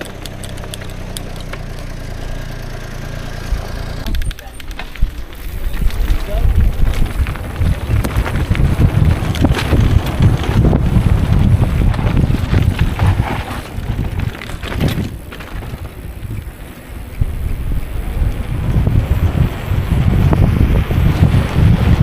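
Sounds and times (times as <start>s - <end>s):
wind buffeting microphone: 3.5s - 22.0s.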